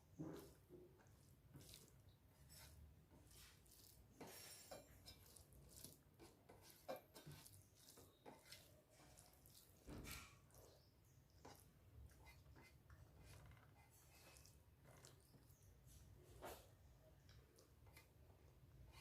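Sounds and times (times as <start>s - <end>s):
cutlery clinking on a plate: 4.2s - 5.4s.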